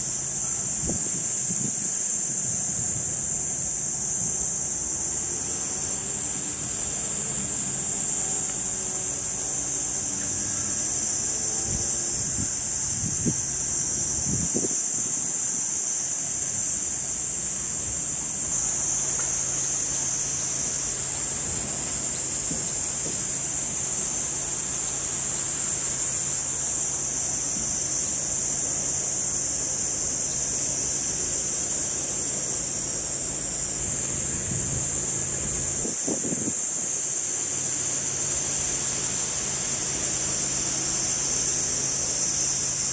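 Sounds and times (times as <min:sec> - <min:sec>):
cicadas droning: 0:00.0 - 0:42.9.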